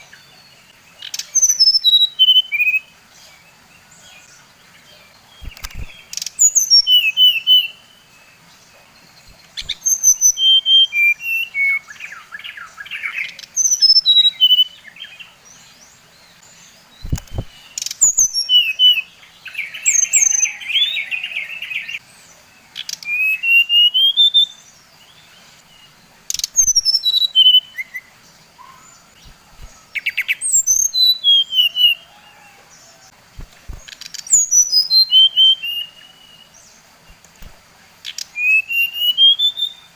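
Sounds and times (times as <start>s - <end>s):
bird whistling song: 1.0s - 2.9s, 5.4s - 7.9s, 9.2s - 15.1s, 17.0s - 22.0s, 22.8s - 24.6s, 26.3s - 32.5s, 33.4s - 37.5s, 38.1s - 39.9s
buzzy rattling bird chatter: 5.4s - 6.4s, 17.0s - 17.6s
sharp bird clicks: 5.4s - 7.1s, 9.3s - 10.3s, 17.0s - 18.7s, 29.2s - 30.8s, 33.3s - 35.0s, 37.0s - 38.3s.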